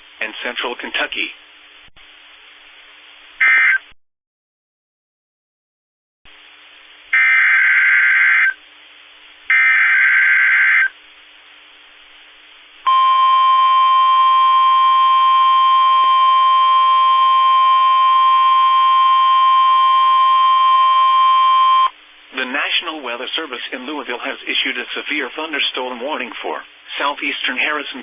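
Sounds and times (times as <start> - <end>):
steady warning alarm tone: 7.2 - 8.6, 9.5 - 10.9, 12.9 - 21.9.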